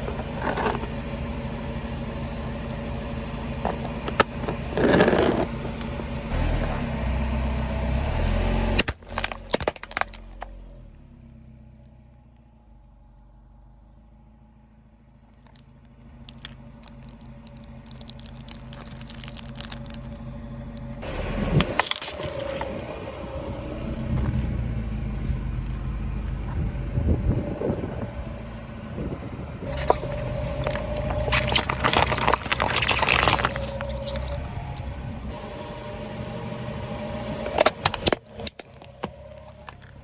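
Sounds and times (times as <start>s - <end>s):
car engine running at low speed: 0.0s - 40.0s
tyres crushing objects: 3.6s - 5.9s, 8.6s - 10.5s, 16.3s - 23.0s, 29.7s - 34.4s.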